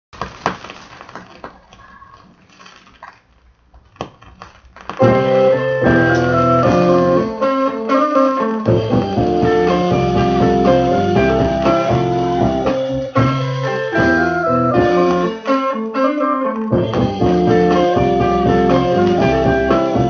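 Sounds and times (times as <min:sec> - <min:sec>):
piano-like keyboard chords: 0:05.0 - 0:20.0.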